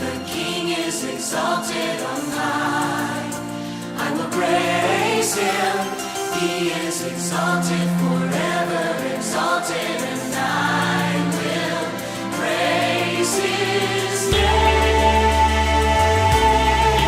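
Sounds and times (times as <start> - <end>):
choir singing: 0.0 - 17.0
music with deep bass: 13.5 - 17.0.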